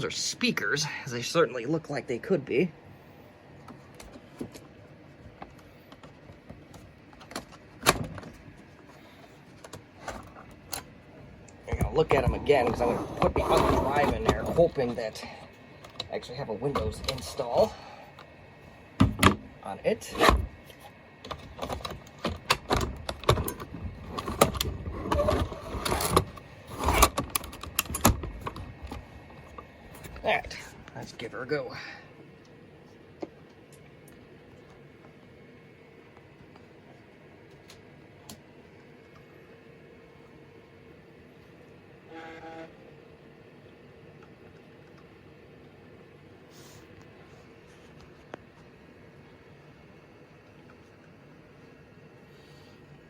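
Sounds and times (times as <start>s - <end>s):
short sliding scrapes: 12.8s - 14.3s.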